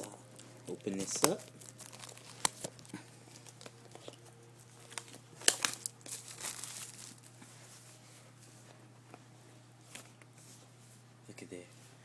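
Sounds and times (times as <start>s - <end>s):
plastic wrapping tearing and crinkling: 0.0s - 7.4s.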